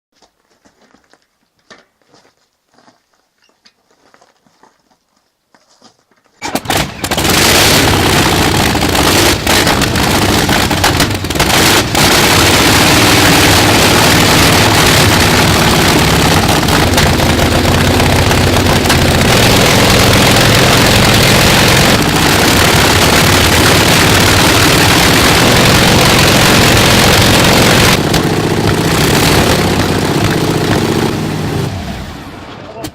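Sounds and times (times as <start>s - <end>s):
motorcycle engine starting and idling: 6.4s - 32.5s.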